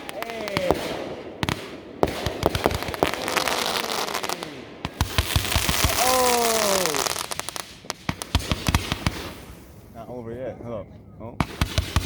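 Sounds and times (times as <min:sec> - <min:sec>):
fireworks cracks and pops: 0:00.0 - 0:09.8
fireworks hiss and crackle: 0:00.0 - 0:10.2, 0:11.4 - 0:12.0
falling firework whistle: 0:05.2 - 0:07.7.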